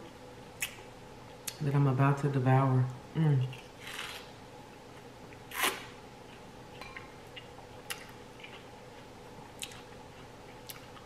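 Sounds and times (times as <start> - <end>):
person chewing fruit: 3.4 - 11.0.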